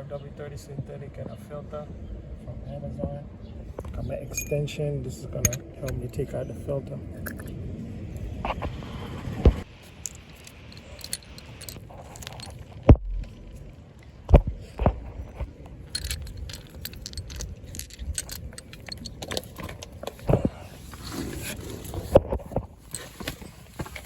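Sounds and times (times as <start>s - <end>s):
metal sockets clinking: 4.2s - 4.8s, 5.4s - 6.4s, 7.2s - 7.6s, 9.8s - 12.8s, 15.2s - 20.3s.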